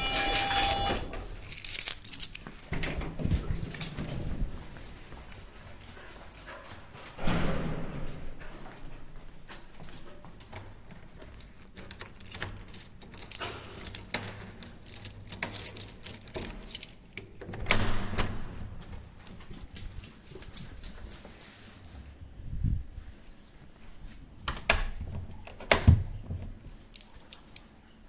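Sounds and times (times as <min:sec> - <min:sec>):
keys jingling in a lock: 0:00.6 - 0:03.1, 0:09.8 - 0:17.8, 0:26.6 - 0:27.8.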